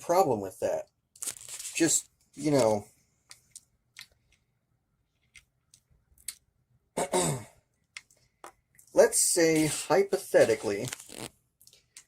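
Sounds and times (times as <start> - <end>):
man speaking: 1.8 - 2.9, 8.9 - 11.0.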